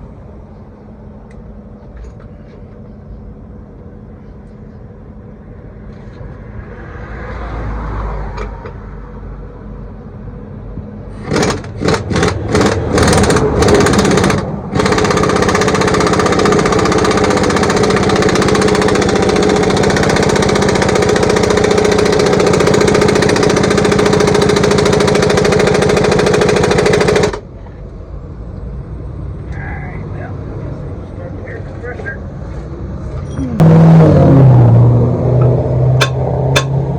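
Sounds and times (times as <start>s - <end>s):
air impact wrench hammering: 11.1s - 27.5s, 36.0s - 36.8s.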